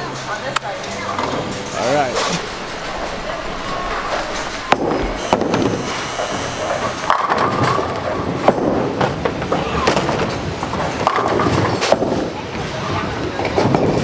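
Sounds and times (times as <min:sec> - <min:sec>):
bowling balls rolling: 0:00.8 - 0:07.5.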